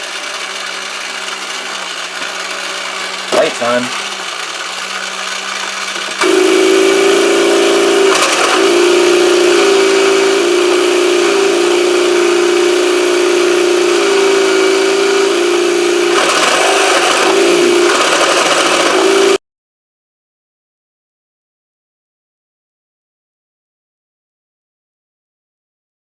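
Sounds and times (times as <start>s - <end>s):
synthetic toy engine drone: 0.0s - 19.4s.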